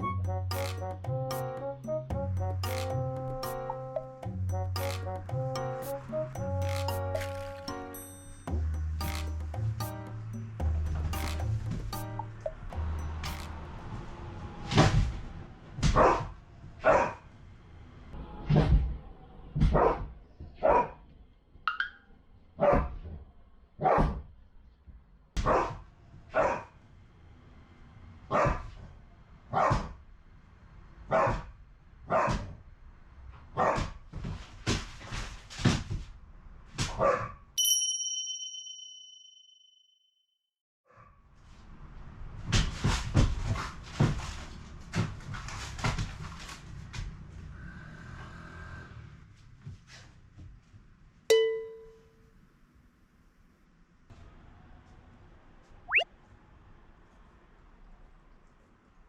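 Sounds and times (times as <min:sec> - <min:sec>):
dog barking deeply: 0:25.4 - 0:25.8
high steady tone: 0:37.6 - 0:40.0, 0:51.3 - 0:52.2.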